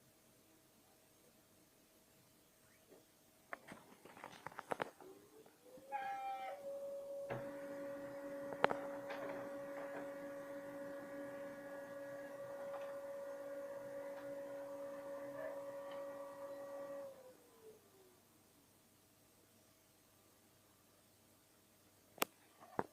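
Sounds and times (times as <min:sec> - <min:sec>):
printer whistling: 0:06.3 - 0:17.2
printer hum: 0:06.4 - 0:17.5.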